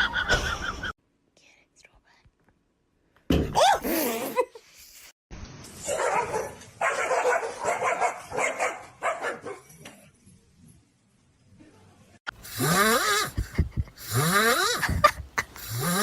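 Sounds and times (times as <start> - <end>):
dog barking and yipping: 5.8 - 9.8.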